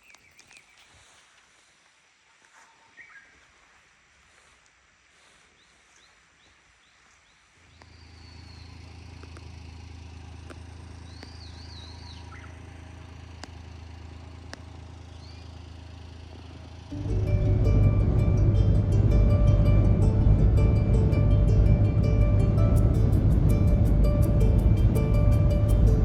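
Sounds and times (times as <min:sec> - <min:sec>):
small bird chirping: 0:00.0 - 0:01.2, 0:02.6 - 0:03.4, 0:05.6 - 0:09.5, 0:10.4 - 0:13.7, 0:14.5 - 0:15.8
faint clicks: 0:09.1 - 0:09.6, 0:10.4 - 0:11.6, 0:13.3 - 0:13.6, 0:14.4 - 0:14.7
steady low hum: 0:16.9 - 0:26.0.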